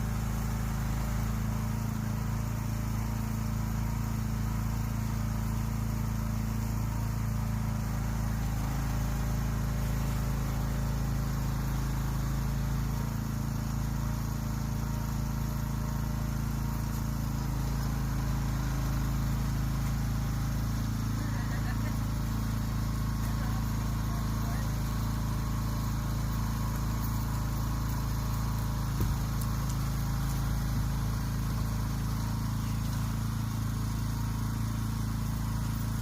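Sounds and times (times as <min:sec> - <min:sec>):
low mechanical hum: 0:00.0 - 0:36.0.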